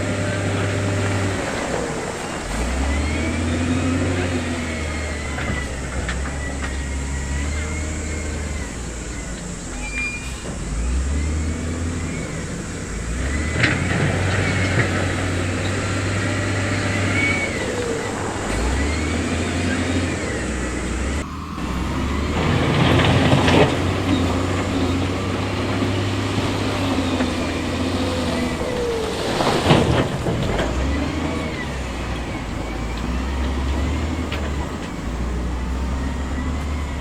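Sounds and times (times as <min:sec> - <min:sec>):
diesel construction machinery running: 0:00.0 - 0:37.0
loud rushing burst: 0:15.0 - 0:30.4.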